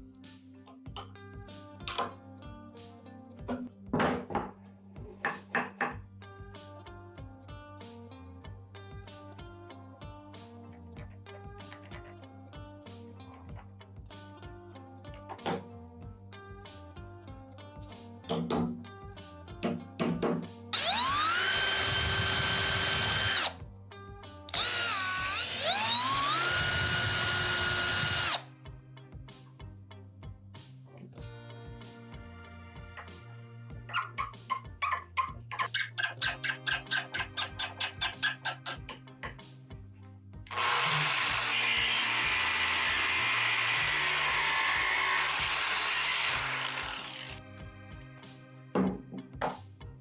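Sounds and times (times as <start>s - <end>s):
background music with steady beat: 0.0s - 50.0s
power tool motor whining: 20.8s - 23.6s, 24.5s - 28.5s, 40.5s - 47.4s.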